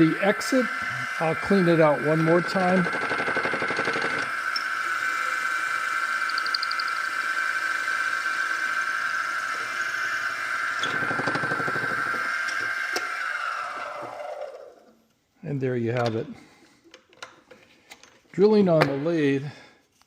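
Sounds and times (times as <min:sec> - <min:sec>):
rattling cutting sound: 0:00.0 - 0:14.5
drill bit boring into wood: 0:00.0 - 0:14.7
wood lathe whining: 0:00.0 - 0:15.0.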